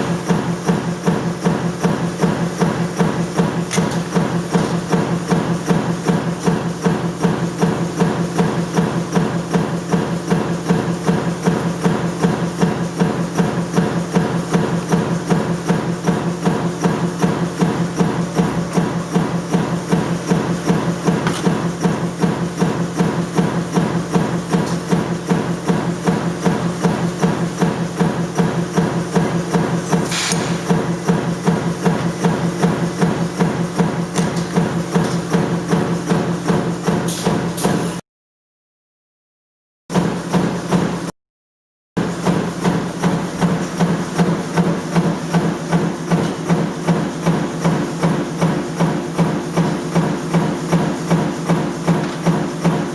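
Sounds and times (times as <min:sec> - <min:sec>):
stamping press die striking: 0:00.3 - 0:07.4, 0:18.0 - 0:22.7, 0:29.5 - 0:38.0.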